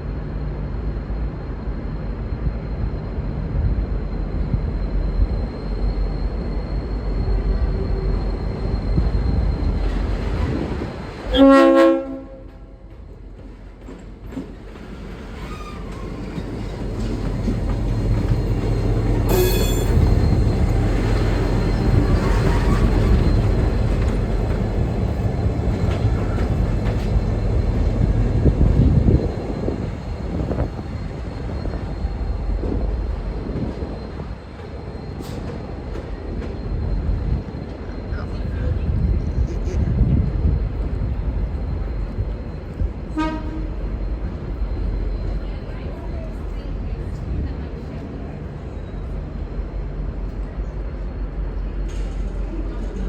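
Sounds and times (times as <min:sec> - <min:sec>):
diesel locomotive rumbling: 0:00.0 - 0:53.0
locomotive air horn blast: 0:11.3 - 0:12.6, 0:19.2 - 0:20.0, 0:43.2 - 0:43.8.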